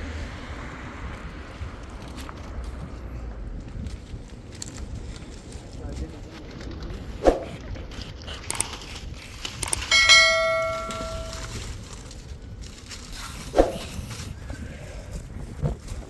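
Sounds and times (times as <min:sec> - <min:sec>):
ringing metallic strike: 0:09.9 - 0:11.6.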